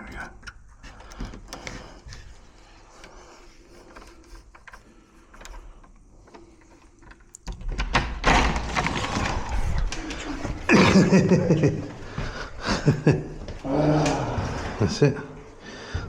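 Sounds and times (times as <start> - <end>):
lock picking tools ticking: 0.0 - 7.9
lock scraping and rattling: 0.0 - 12.1.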